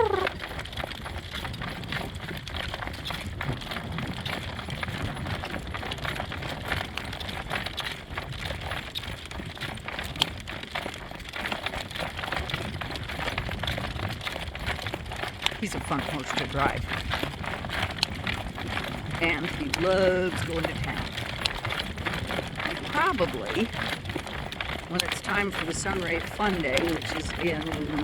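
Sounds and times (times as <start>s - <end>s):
horse hooves trotting: 0.0s - 28.0s
steady low rumble: 24.4s - 28.0s.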